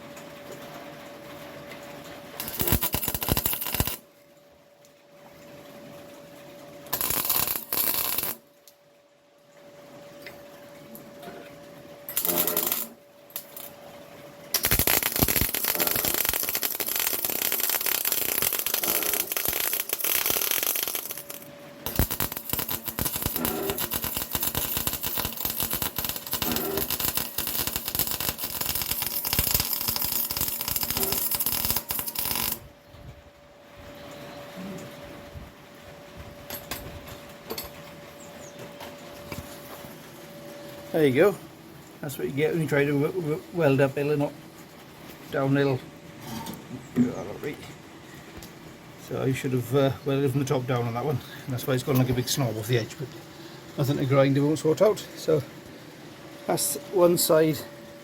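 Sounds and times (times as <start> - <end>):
faint steady hum: 0.0 - 58.0
arc welding crackling: 2.3 - 4.2, 6.8 - 8.8, 12.0 - 32.7, 48.4 - 58.0.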